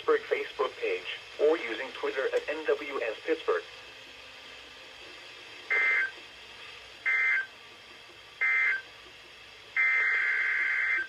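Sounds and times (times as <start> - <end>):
electronic data bursts: 5.7 - 6.2, 7.0 - 7.5, 8.4 - 8.9.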